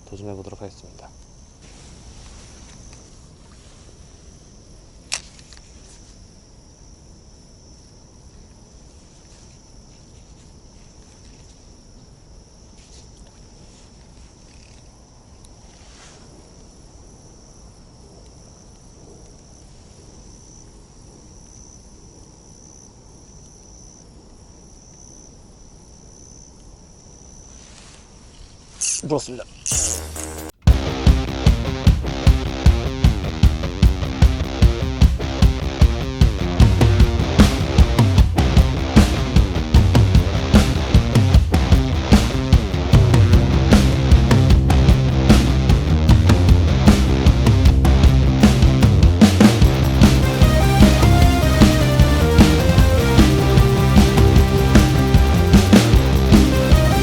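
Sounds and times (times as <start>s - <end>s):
insects buzzing: 0.0s - 30.6s, 47.9s - 57.0s.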